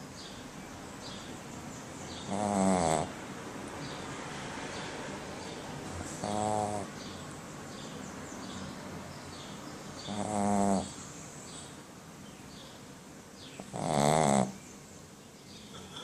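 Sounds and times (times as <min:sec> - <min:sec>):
pet snoring: 0:02.2 - 0:03.2, 0:06.2 - 0:06.9, 0:10.0 - 0:11.0, 0:13.6 - 0:14.6.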